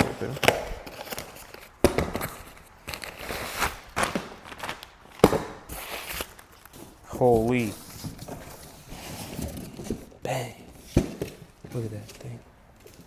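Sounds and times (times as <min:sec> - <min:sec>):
packaging rustling and tearing: 0:00.0 - 0:10.2.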